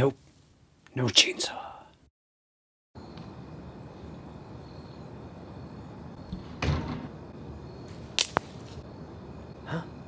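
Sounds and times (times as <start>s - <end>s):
door closing with scraping thud: 6.3s - 7.2s.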